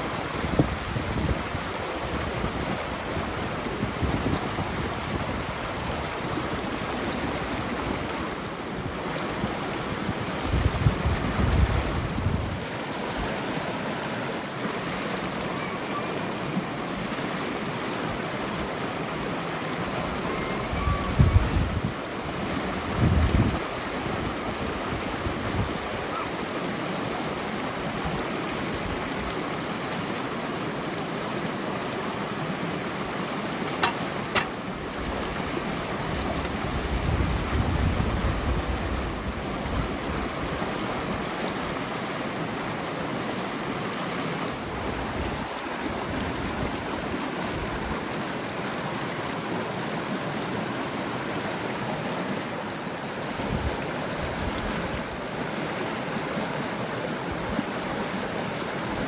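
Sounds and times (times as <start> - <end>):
river flowing: 0.0 - 59.0
wind buffeting microphone: 0.3 - 12.7, 20.1 - 26.0, 33.8 - 41.2.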